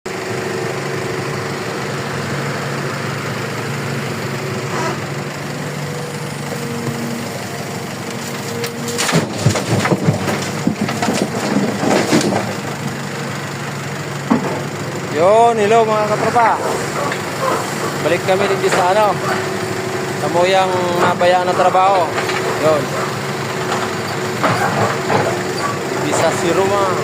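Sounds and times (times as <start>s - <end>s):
excavator engine running: 0.1s - 27.0s
material clattering into truck bed: 8.5s - 12.7s.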